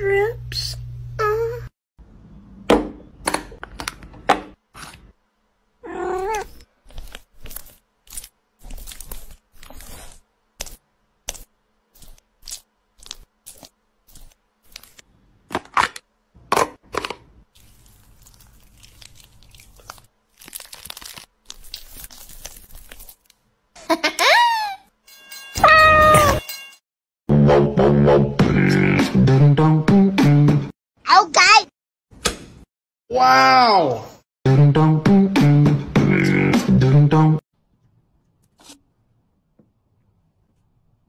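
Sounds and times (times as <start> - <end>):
kitchen food preparation sounds: 2.2 - 5.3, 5.9 - 24.4, 37.6 - 41.0.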